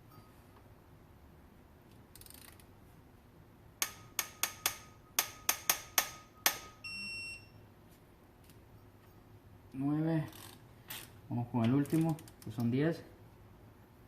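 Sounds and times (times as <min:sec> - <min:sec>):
torque wrench clicking: 0:02.1 - 0:02.7
electronic beep: 0:06.8 - 0:07.6.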